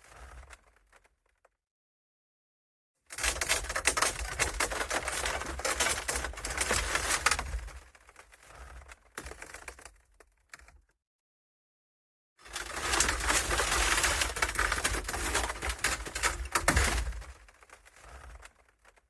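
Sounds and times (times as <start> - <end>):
rapid crackling clicks: 3.2 - 10.6, 12.5 - 19.0.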